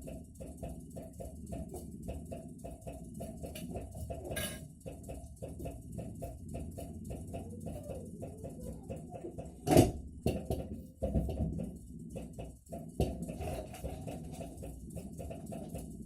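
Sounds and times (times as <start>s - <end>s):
refrigerator knocking: 3.0s - 11.7s, 12.4s - 16.0s.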